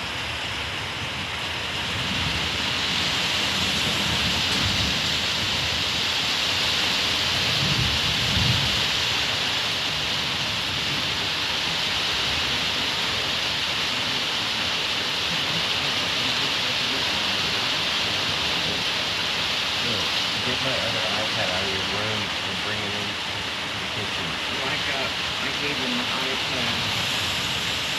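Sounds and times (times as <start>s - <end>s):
heavy rain falling: 0.0s - 27.9s
low rumble of thunder: 0.6s - 14.0s.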